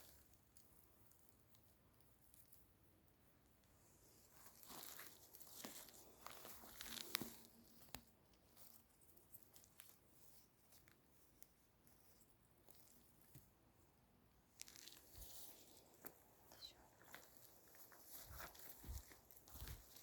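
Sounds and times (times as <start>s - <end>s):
leaf litter rustling and crackling: 4.1s - 8.0s, 14.6s - 20.0s
twigs snapping: 4.5s - 8.1s, 14.6s - 16.2s.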